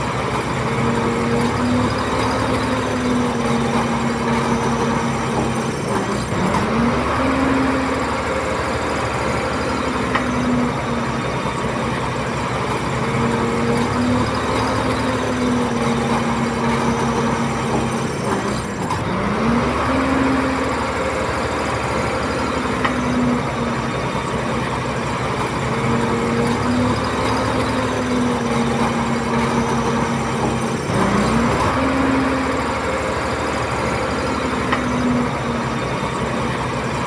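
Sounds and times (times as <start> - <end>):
bulldozer diesel engine running: 0.0 - 37.0.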